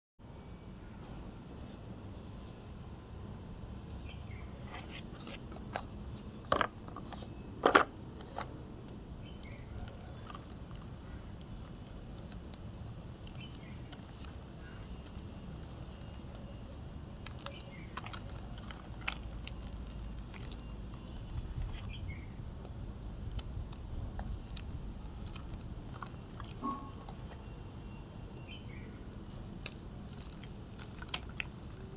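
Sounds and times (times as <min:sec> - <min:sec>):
chalk blocks crunching: 0:09.2 - 0:22.2, 0:23.0 - 0:31.9.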